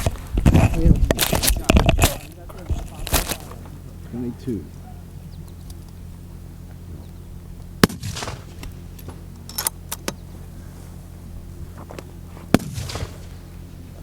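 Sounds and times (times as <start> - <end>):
rifle shots with echo: 7.8 - 8.7, 12.5 - 13.4.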